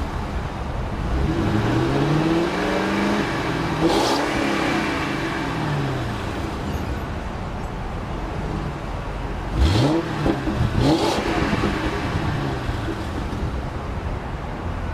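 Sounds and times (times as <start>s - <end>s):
car engine idling: 2.8s - 14.9s
engine throttle blips: 9.5s - 13.8s.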